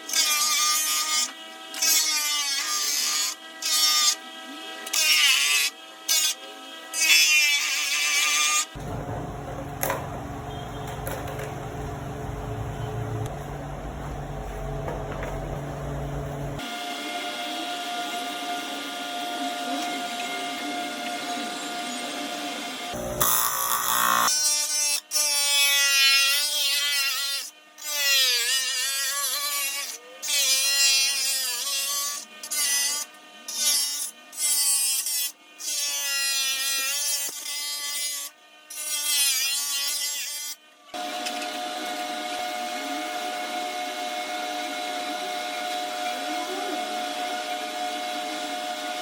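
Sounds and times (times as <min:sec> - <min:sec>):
high-speed power tool whine: 0:14.1 - 0:24.5, 0:40.7 - 0:49.0.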